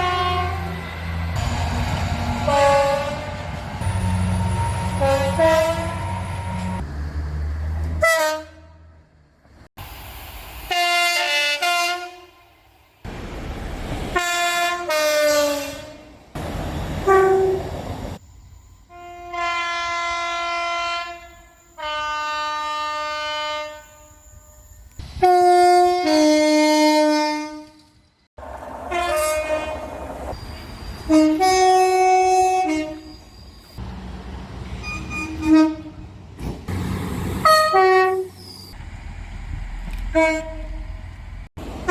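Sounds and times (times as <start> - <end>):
two-tone train horn blasts: 0.0 - 0.8, 2.3 - 6.8, 8.0 - 9.0, 10.7 - 12.6, 14.2 - 16.2, 17.0 - 17.8, 18.8 - 24.6, 25.2 - 28.0, 28.9 - 29.9, 31.0 - 33.3, 34.8 - 36.1, 37.4 - 38.4, 40.1 - 41.0
train running rumble: 0.0 - 8.4, 12.6 - 41.9.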